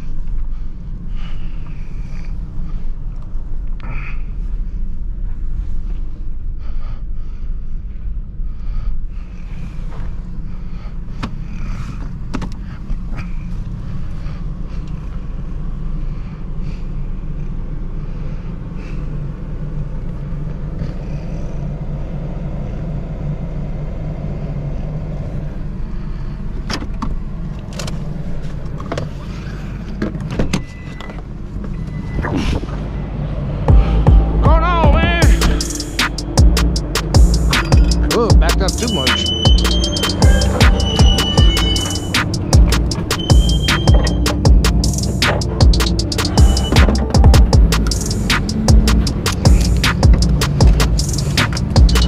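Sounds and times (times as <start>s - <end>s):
truck engine and road rumble: 0.0s - 52.0s
sharp knocks and rattles: 39.4s - 52.0s.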